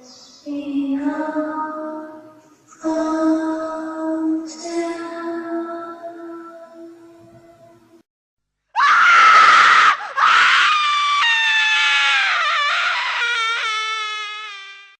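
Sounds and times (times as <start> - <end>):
little girl screaming: 8.8 - 15.0.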